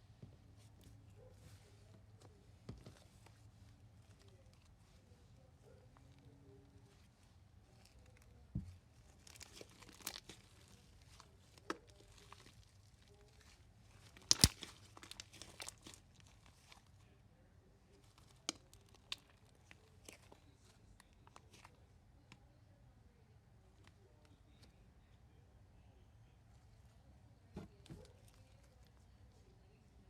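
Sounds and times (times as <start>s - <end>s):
slime crackling and crinkling: 5.9s - 17.0s, 17.9s - 21.8s.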